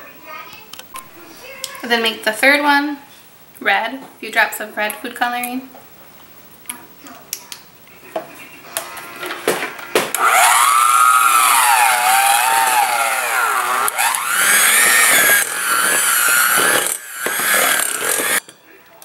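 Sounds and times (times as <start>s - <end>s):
electric mixer motor whine: 10.1s - 18.4s.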